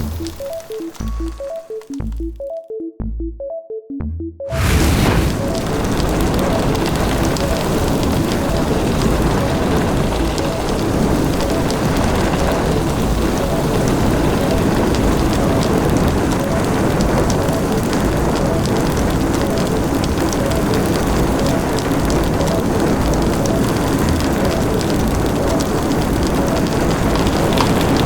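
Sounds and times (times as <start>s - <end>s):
rushing flame with crackling: 0.0s - 2.1s, 4.5s - 28.0s.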